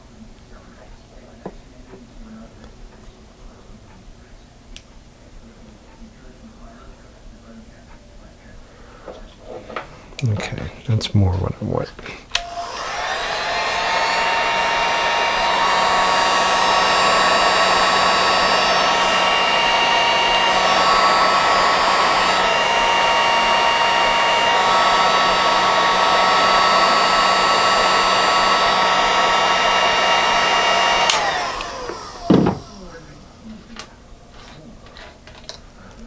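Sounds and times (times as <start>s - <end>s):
heat gun fan whine: 12.2s - 35.6s.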